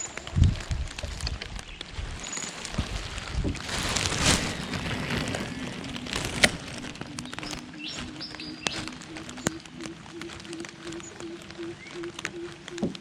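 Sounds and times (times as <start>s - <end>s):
small clicks and ticks: 0.0s - 3.0s, 4.2s - 13.0s
bird chirping: 4.2s - 13.0s.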